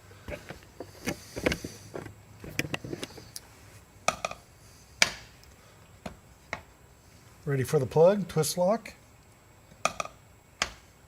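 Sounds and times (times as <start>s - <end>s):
handling clicks and knocks: 0.2s - 3.4s.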